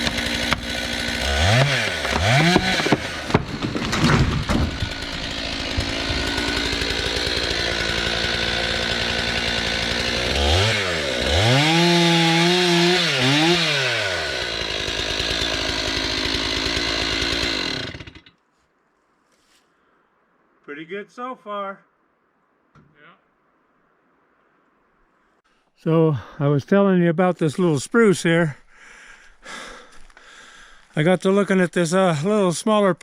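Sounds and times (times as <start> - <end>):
chainsaw cutting timber: 0.0 - 18.4.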